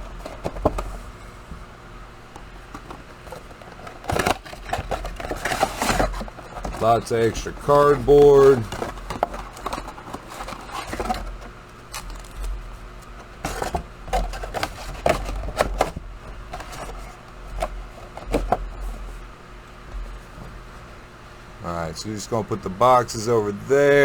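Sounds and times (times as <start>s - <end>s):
cardboard boxes being unpacked: 2.6s - 19.1s.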